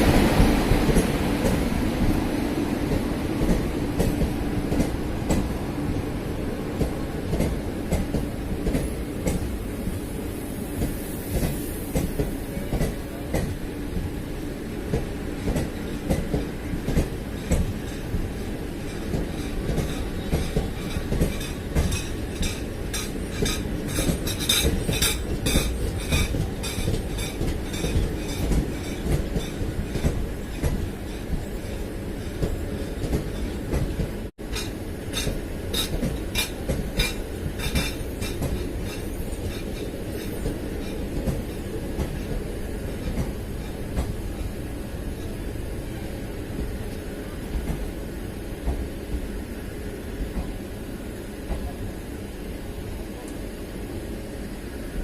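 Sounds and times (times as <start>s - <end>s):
train rumbling on rails: 0.0s - 55.0s
wheels clacking over rail joints: 14.9s - 44.6s.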